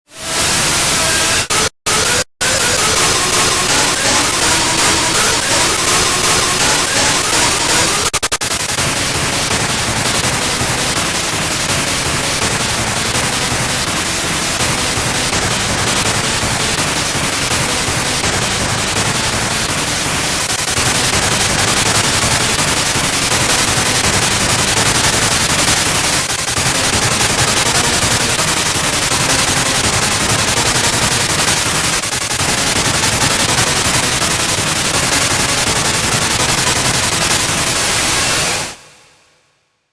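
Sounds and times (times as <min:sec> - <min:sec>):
harsh static noise: 0:00.1 - 0:39.2.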